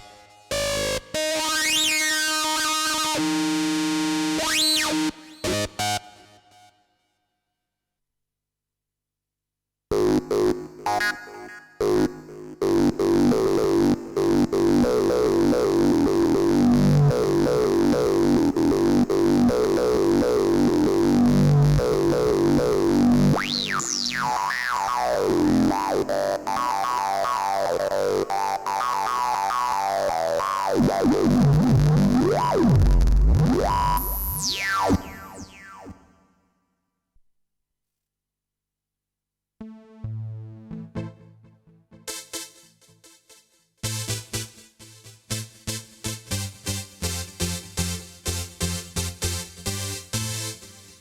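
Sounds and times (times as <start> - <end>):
synthesizer chords: 10.1 - 36.0, 39.6 - 51.0.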